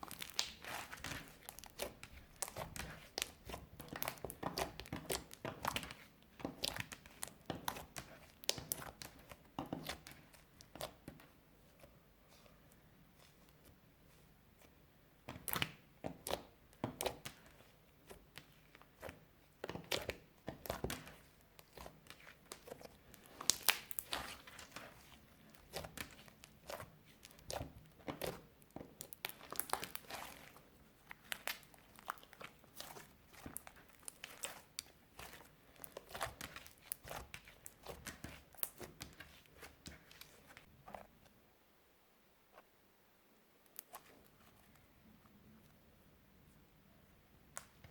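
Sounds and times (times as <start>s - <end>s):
slime squishing and crackling: 0.0s - 12.5s, 15.3s - 41.0s.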